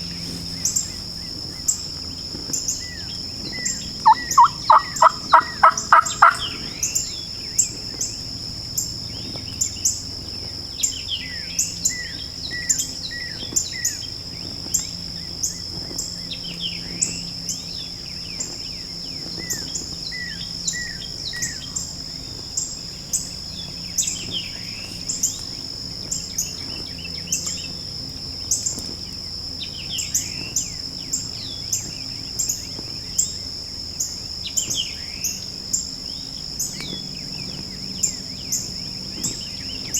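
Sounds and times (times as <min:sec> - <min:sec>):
birds calling: 0:00.0 - 0:27.8, 0:28.4 - 0:39.9
high-pitched insect drone: 0:00.0 - 0:39.9
sharp ticks: 0:04.0 - 0:06.6.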